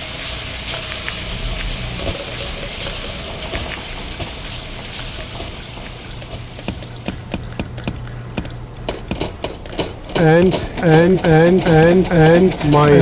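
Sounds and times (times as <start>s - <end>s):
simmering hiss in a pan: 0.0s - 8.3s.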